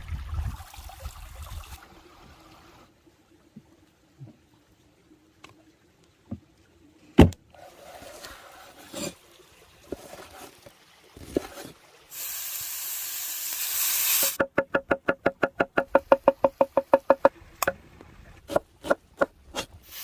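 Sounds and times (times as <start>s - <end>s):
food sizzling in a hot pan: 12.1s - 14.4s.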